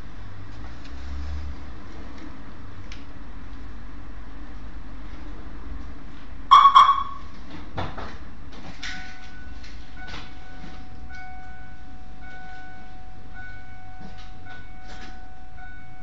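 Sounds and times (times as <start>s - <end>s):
car engine rumbling: 0.0s - 16.0s
loud ringing dings: 6.5s - 7.3s
pulsing warning tone: 6.5s - 7.3s, 9.0s - 16.0s.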